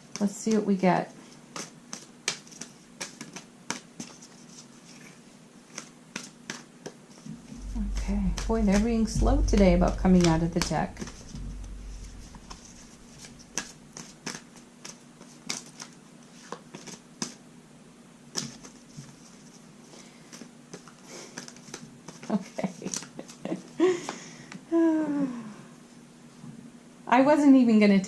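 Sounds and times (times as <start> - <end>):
cards being shuffled: 1.5 - 7.0, 13.1 - 17.4.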